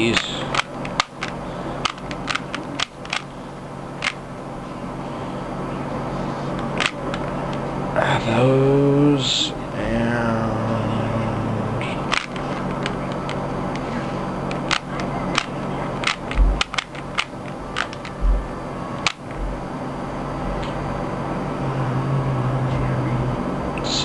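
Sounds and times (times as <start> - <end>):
steady low hum: 0.0 - 24.0
plastic puzzle cube clicking: 0.5 - 3.2, 14.5 - 18.2.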